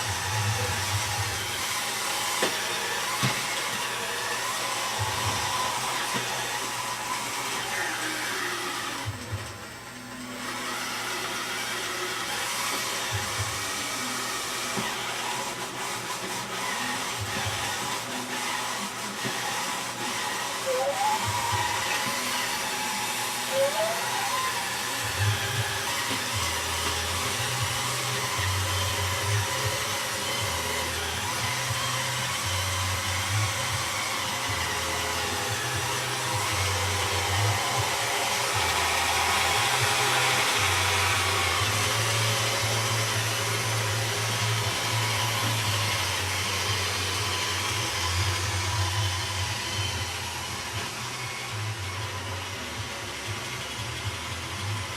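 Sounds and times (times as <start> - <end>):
robot vacuum whirring: 0.0 - 54.9
short rising squeaks: 20.6 - 21.8.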